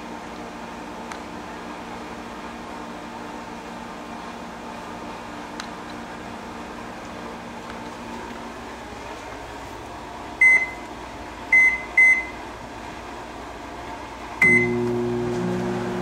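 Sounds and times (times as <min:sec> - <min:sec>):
microwave oven humming: 0:00.0 - 0:16.0
microwave keypad beeps: 0:10.4 - 0:10.8, 0:11.5 - 0:12.4, 0:14.4 - 0:14.8.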